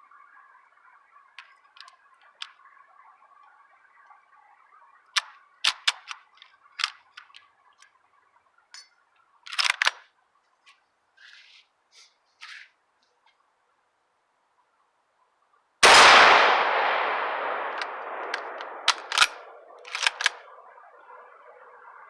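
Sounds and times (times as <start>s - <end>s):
sharp clicks and clacks: 17.7s - 20.4s.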